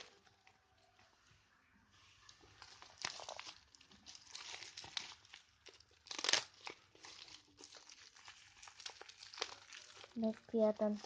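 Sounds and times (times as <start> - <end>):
packaging crumpled and torn: 2.2 - 11.0.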